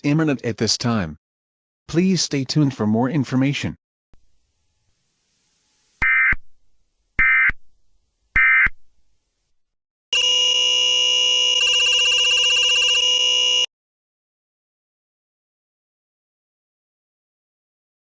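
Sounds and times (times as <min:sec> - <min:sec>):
loud buzzing multi-tone sound: 0:10.1 - 0:13.7
short digital data bursts: 0:10.2 - 0:13.7.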